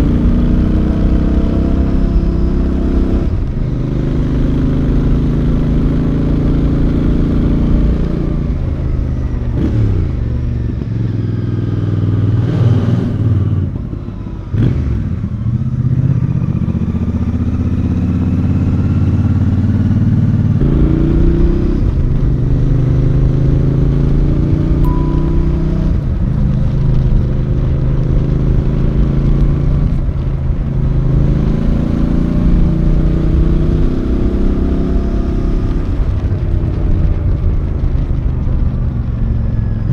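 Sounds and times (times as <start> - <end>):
motorcycle engine revving: 14.5 - 38.3.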